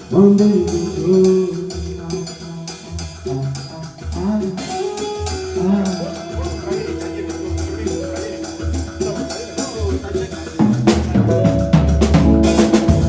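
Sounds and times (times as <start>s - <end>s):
band playing instrumental: 0.0s - 13.0s
drum kit and percussion: 0.0s - 13.0s
held keyboard notes: 0.0s - 13.0s.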